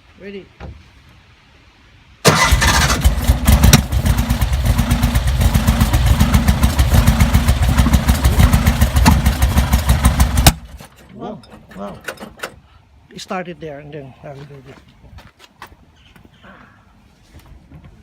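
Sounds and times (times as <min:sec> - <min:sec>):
engine cranking with starter: 0:02.2 - 0:12.6.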